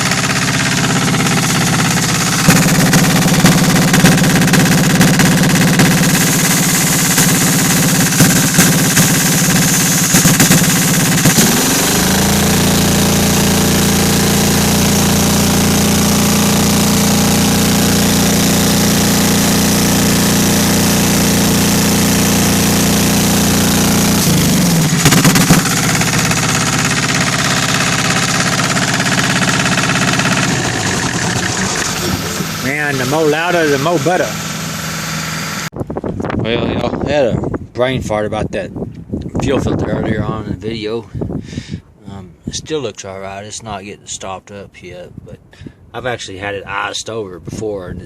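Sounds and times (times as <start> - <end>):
diesel engine running: 0.0 - 35.8.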